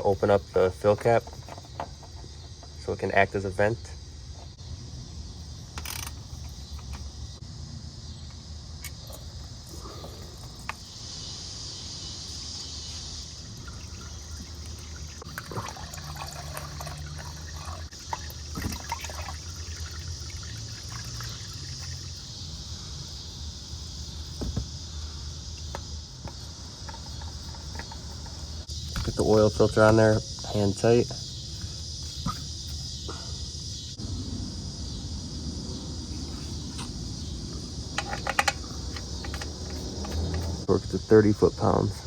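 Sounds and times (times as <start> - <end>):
oil trickling into pan: 13.2 - 22.2.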